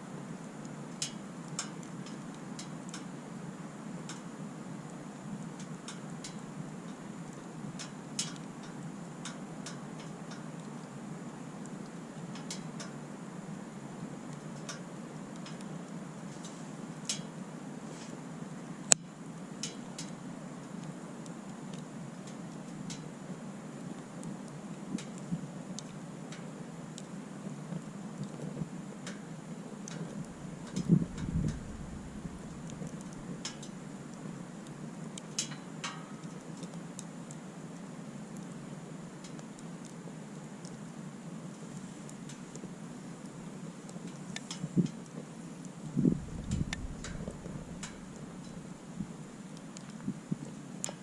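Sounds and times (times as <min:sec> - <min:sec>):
campfire crackling and popping: 0:00.6 - 0:51.0
low rushing noise: 0:30.2 - 0:33.9, 0:45.9 - 0:49.2.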